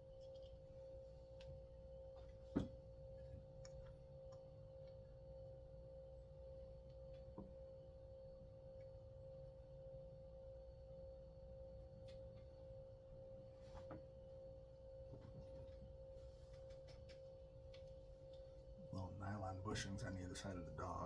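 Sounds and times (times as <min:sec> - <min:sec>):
faint steady hum: 0:00.0 - 0:21.0
faint clicks of small parts: 0:00.1 - 0:00.6, 0:16.5 - 0:18.5.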